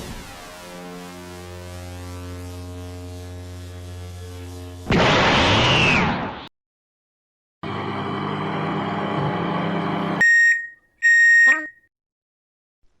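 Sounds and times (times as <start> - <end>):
microwave oven humming: 7.6 - 10.2
high beeps: 10.2 - 11.8.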